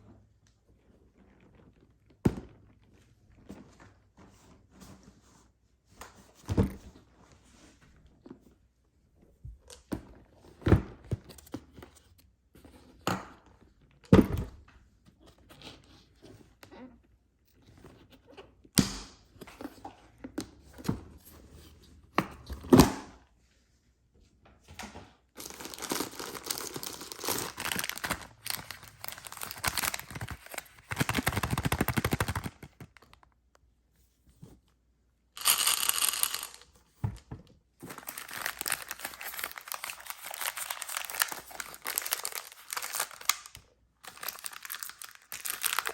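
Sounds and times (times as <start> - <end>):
wrapper crinkling and tearing: 25.4 - 33.3, 35.4 - 36.6, 37.8 - 45.9
taps and knocks on packages: 29.6 - 33.0.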